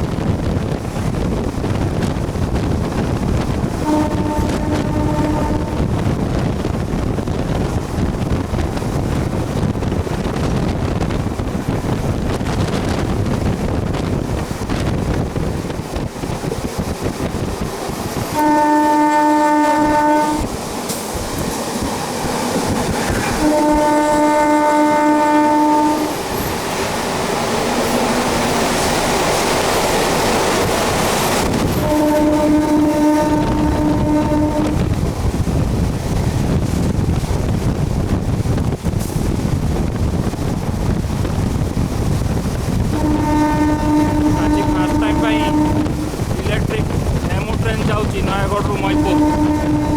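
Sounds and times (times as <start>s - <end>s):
train rumbling along track: 0.0s - 49.9s
train horn blasts: 3.7s - 6.3s, 18.2s - 20.6s, 23.2s - 26.4s, 31.4s - 35.0s, 42.8s - 49.9s.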